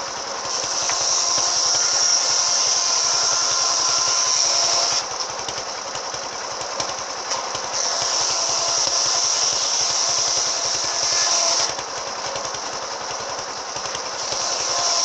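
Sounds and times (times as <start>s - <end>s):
saw blade cutting hiss: 0.0s - 5.5s, 7.3s - 11.8s, 14.0s - 15.0s
circular saw engine pulsing: 0.0s - 15.0s.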